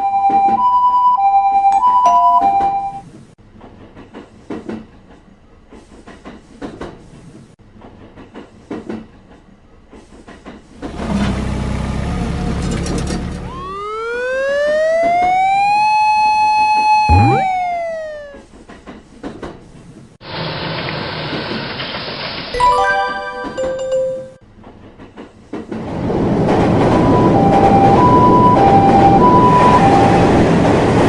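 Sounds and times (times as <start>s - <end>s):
siren wail: 13.4s - 18.5s, 27.0s - 30.4s.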